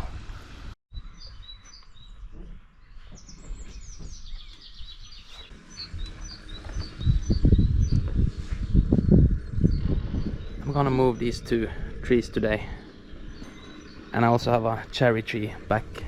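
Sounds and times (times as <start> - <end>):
small birds singing: 0.9 - 16.0
low rumble with thumps: 5.5 - 16.0.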